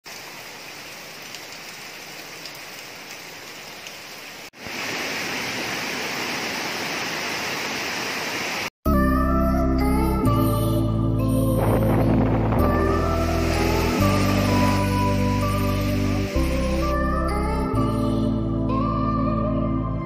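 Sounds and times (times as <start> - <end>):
rushing water: 0.0 - 8.7, 11.6 - 17.1.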